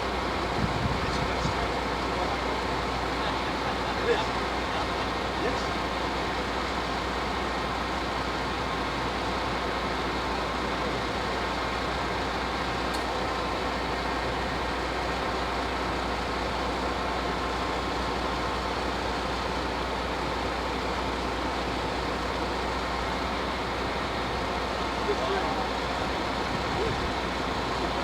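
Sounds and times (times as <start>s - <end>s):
vehicle noise hiss and hum: 0.2s - 2.5s.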